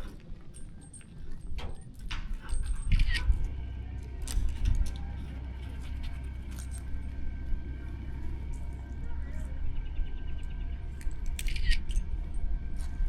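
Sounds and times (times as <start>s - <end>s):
small metal gear clinking: 0.0s - 3.4s, 4.2s - 7.2s, 11.0s - 12.9s
steady low hum: 0.0s - 13.0s.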